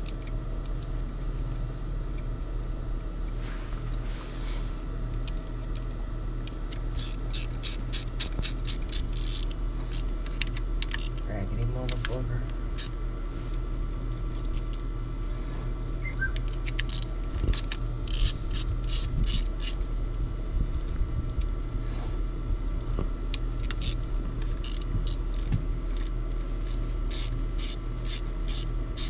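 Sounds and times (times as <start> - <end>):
steady low hum: 0.0 - 29.0
ratchet-like mechanical clicking: 6.7 - 10.1, 16.7 - 19.8, 23.6 - 29.0.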